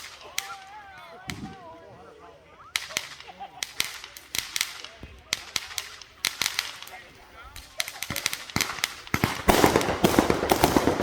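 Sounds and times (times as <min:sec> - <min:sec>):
fireworks cracking and popping: 0:00.0 - 0:02.0, 0:02.7 - 0:11.0.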